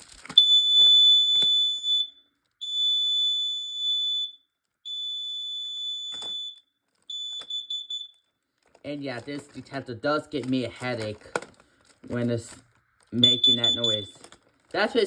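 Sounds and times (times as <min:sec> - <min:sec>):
alarm beeping high-pitched tone: 0:13.2 - 0:14.2.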